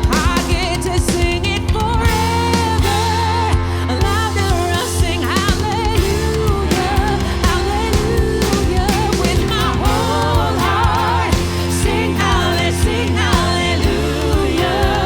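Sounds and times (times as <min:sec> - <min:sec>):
drum hits: 0:00.0 - 0:15.0
person singing with vibrato: 0:00.0 - 0:15.0
sustained low chords: 0:06.0 - 0:15.0.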